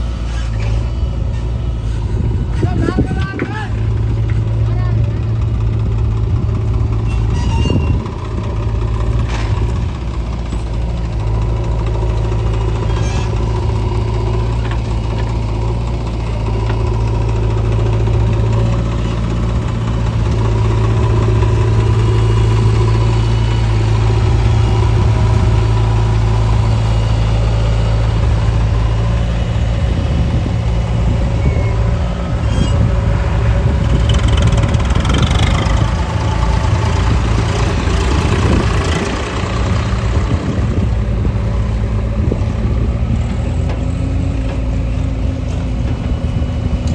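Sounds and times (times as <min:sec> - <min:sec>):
heavy diesel engine running: 0:00.0 - 0:46.9.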